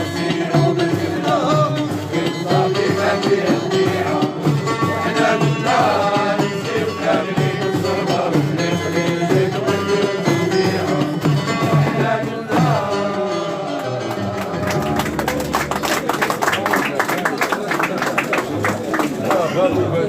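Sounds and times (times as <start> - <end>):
instrumental accompaniment: 0.0 - 17.7
person singing: 8.6 - 15.8.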